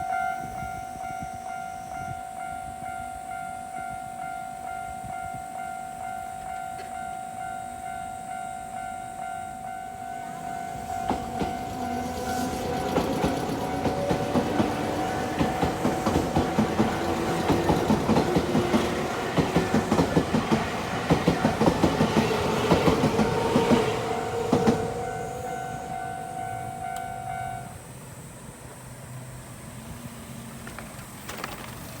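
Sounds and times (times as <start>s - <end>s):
train wheels clacking over rail joints: 10.6s - 25.4s, 30.6s - 32.0s
level crossing bell ringing: 24.2s - 27.7s.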